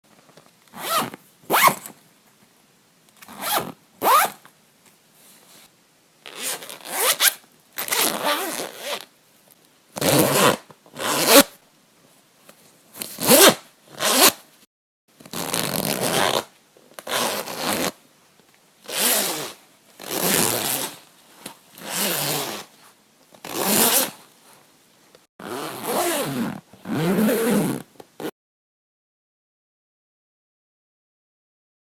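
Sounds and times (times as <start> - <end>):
clothing zipper rasping: 0.8 - 1.8, 3.3 - 4.4, 6.3 - 9.1, 10.0 - 11.5, 13.2 - 14.4, 15.3 - 16.5, 17.1 - 18.0, 18.9 - 21.0, 21.8 - 22.7, 23.4 - 24.2, 25.4 - 28.3.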